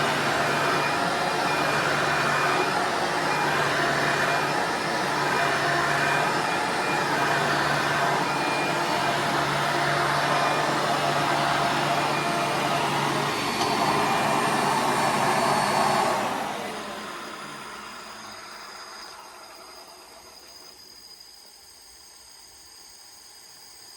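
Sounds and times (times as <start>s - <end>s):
upright vacuum cleaner running: 0.0s - 20.9s.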